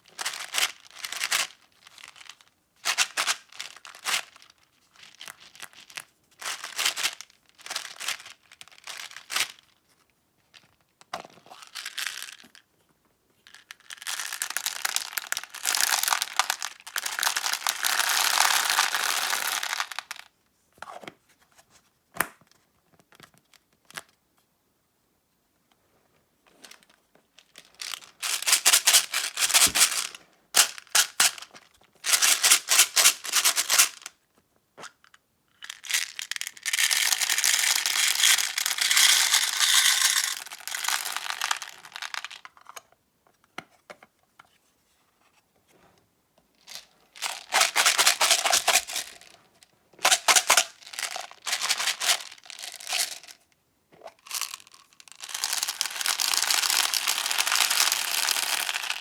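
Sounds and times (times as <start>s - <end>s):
crinkling material: 26.5s - 34.1s, 35.7s - 42.6s, 46.6s - 53.4s.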